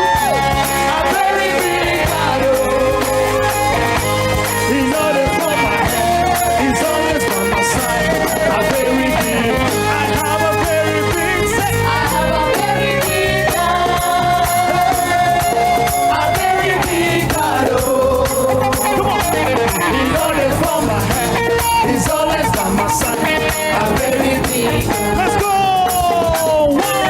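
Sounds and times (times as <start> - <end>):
percussion beat: 0.0 - 27.0
worship band playing: 0.0 - 27.0.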